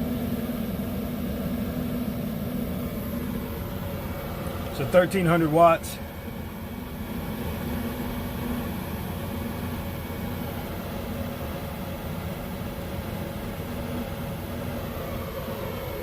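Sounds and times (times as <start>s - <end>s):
fan drone: 0.0s - 16.0s
low electrical hum: 0.0s - 16.0s.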